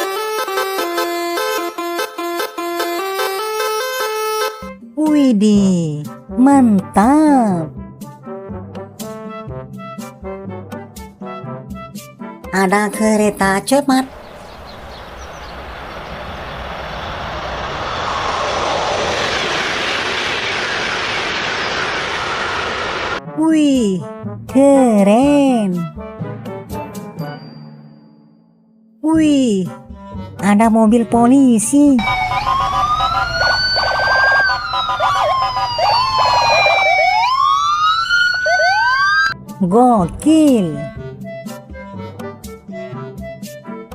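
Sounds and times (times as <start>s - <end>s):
police siren: 0.0s - 4.7s, 15.0s - 23.2s, 32.0s - 39.4s
high-speed train rushing: 14.0s - 23.2s
faint whine rising in pitch: 14.1s - 23.2s, 32.0s - 39.4s.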